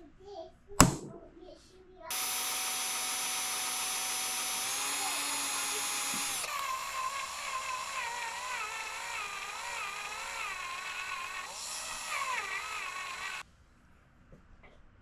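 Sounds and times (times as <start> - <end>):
power drill boring into steel: 2.1 - 13.4.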